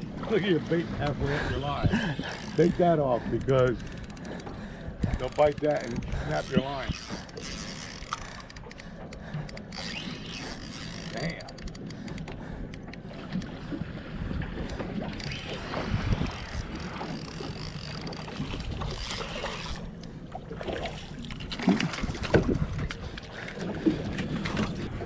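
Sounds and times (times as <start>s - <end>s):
water noise: 0.0s - 25.0s
wind on microphone: 4.9s - 7.1s, 14.1s - 17.7s, 21.8s - 23.2s.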